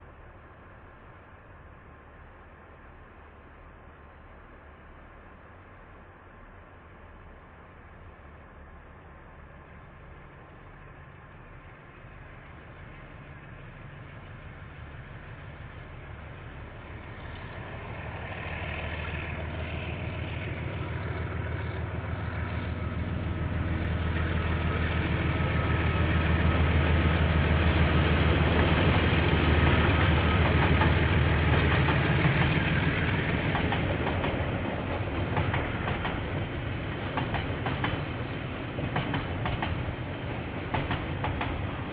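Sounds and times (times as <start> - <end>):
diesel locomotive engine drone: 0.0 - 41.9.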